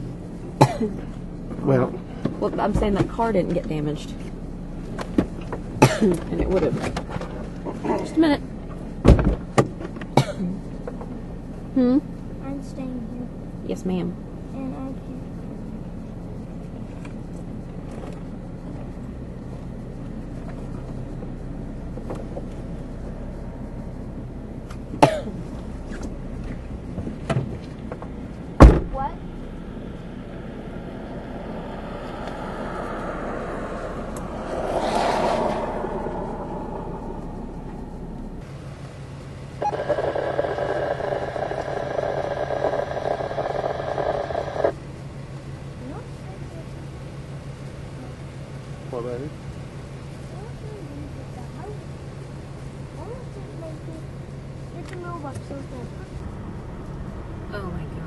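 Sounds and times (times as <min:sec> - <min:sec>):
vehicle engine humming: 0:00.0 - 0:58.0
radio static crackling: 0:39.6 - 0:44.8.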